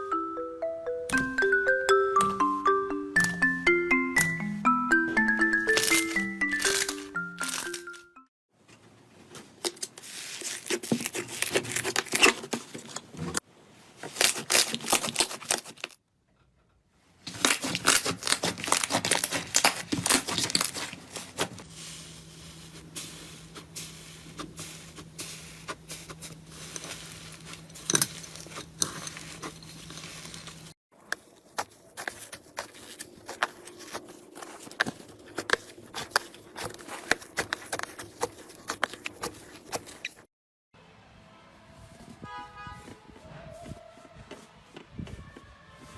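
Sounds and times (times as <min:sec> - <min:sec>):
slime crackling and popping: 0:17.3 - 0:21.5.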